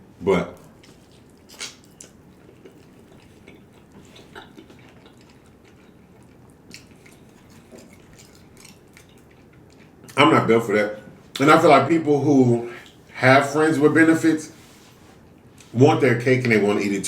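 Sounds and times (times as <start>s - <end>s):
wet mouth clicks chewing: 0.6s - 10.2s.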